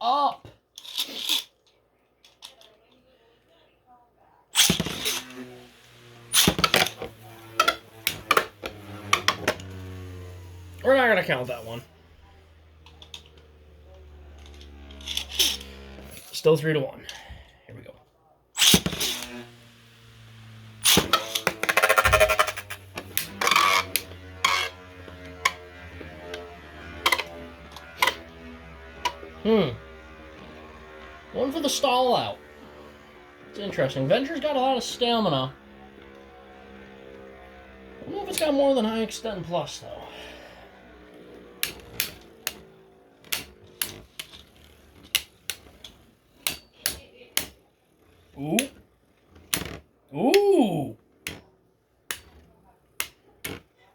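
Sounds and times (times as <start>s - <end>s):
faint spinning hum: 2.8s - 17.1s
spinning tops clashing: 4.6s - 10.9s, 18.6s - 19.5s, 20.3s - 23.9s
spinning tops launching: 4.6s - 16.4s, 18.6s - 34.4s, 35.6s - 49.8s.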